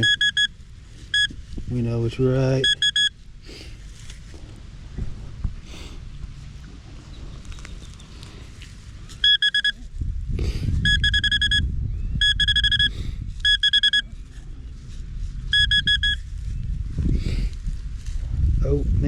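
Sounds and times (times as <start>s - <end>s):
metal detector pinpointer beeping: 0.0s - 0.5s, 1.1s - 1.4s, 2.6s - 3.2s, 9.2s - 9.8s, 10.8s - 14.1s, 15.5s - 16.2s
rustling and scraping: 0.0s - 10.9s, 13.4s - 18.5s.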